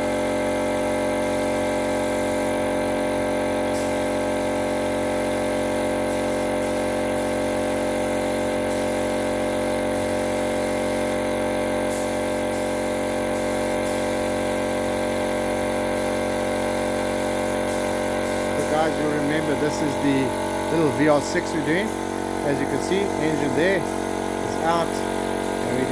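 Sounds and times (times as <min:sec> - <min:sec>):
machine motor humming: 0:16.6 - 0:25.9.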